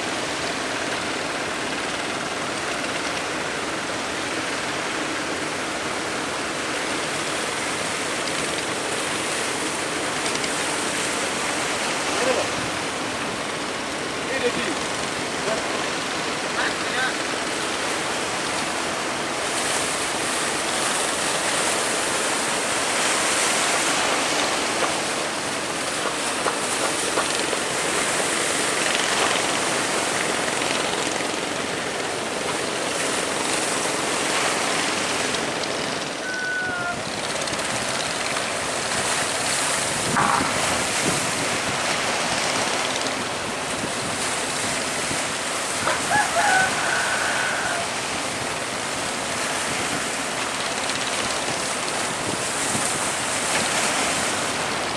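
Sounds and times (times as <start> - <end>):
sea waves: 0.0 - 54.9
wind buffeting microphone: 35.4 - 46.8
faint high tones: 36.2 - 37.0.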